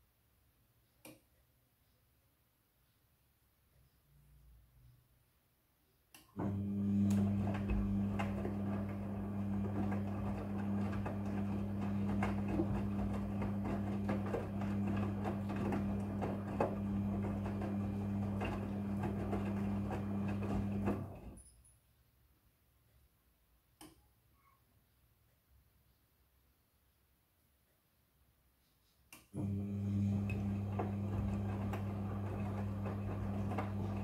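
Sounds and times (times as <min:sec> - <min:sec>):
washing machine motor humming: 0:06.4 - 0:21.4, 0:29.3 - 0:34.0.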